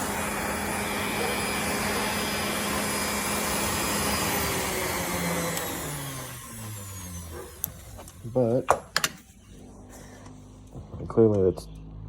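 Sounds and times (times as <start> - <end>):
grinder motor running: 0.0 - 11.0.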